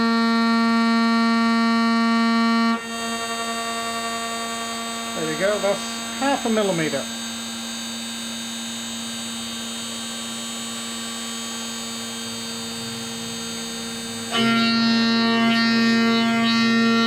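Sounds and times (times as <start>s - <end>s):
router spindle whine: 0.0s - 17.0s.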